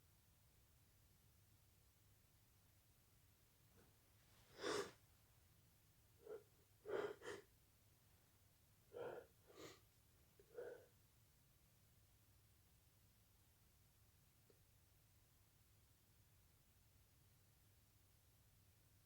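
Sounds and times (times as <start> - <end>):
quick breath intakes: 4.5 - 5.0, 6.2 - 7.4.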